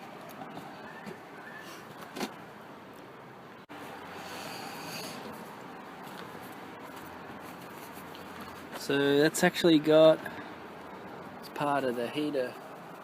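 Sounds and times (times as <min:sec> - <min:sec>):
hands rustling and scraping hoses: 0:03.7 - 0:09.6.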